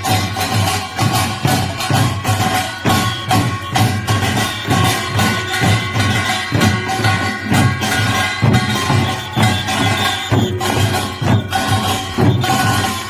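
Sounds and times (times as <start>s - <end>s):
driving drum strokes: 0.0s - 13.0s
ringing metallic percussion: 0.0s - 13.0s.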